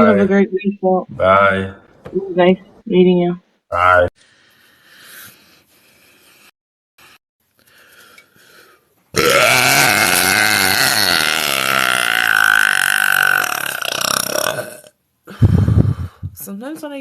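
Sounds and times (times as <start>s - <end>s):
woman belching: 0.0s - 0.4s, 9.2s - 14.9s.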